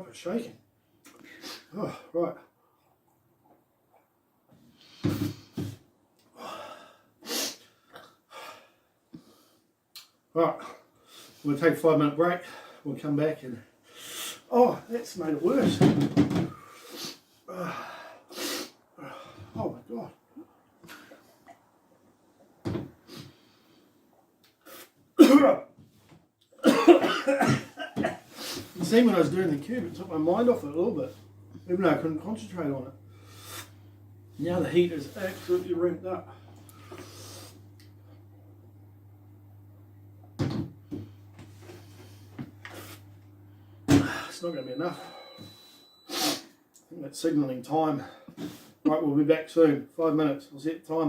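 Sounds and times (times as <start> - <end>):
man gasping and breathing hard: 6.3 - 9.3
man coughing: 25.2 - 25.6, 26.6 - 28.3, 43.9 - 44.4
man clearing his throat: 25.2 - 25.7, 26.6 - 28.2, 43.9 - 44.4.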